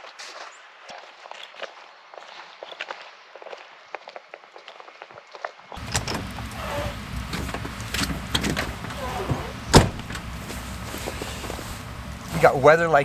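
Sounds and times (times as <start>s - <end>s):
vehicle engine low rumble: 5.8s - 13.0s.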